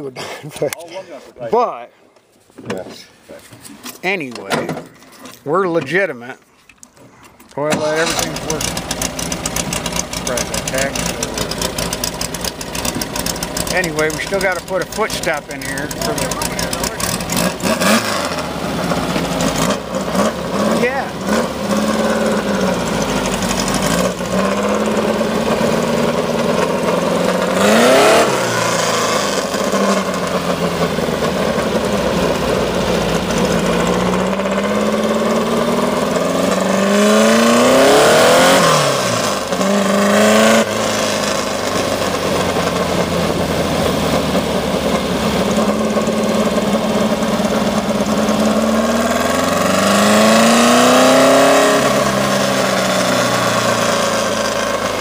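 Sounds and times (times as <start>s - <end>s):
buggy engine accelerating: 7.6s - 55.0s
wind and road noise: 15.4s - 55.0s.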